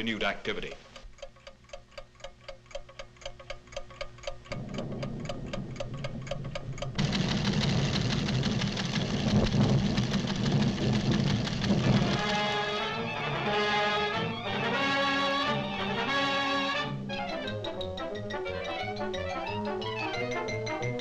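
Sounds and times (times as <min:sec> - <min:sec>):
instruments ticking: 0:00.0 - 0:12.6, 0:17.1 - 0:21.0
low rumbling: 0:04.5 - 0:14.6.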